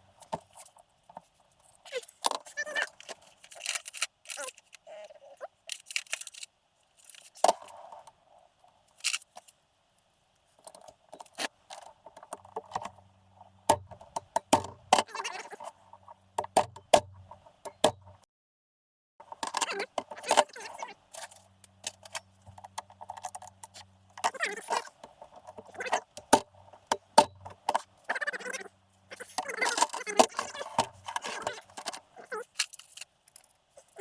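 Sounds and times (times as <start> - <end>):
metal tools clinking and rattling: 29.2 - 34.0.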